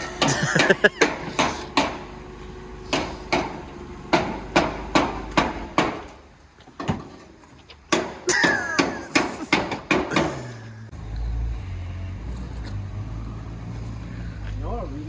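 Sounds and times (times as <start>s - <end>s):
sharp knocks on metal: 0.2s - 2.1s, 2.9s - 6.2s, 7.9s - 10.5s.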